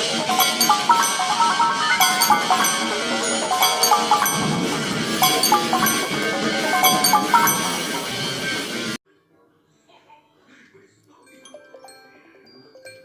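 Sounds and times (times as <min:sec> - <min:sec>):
mallet percussion timer melody: 0:00.0 - 0:08.4.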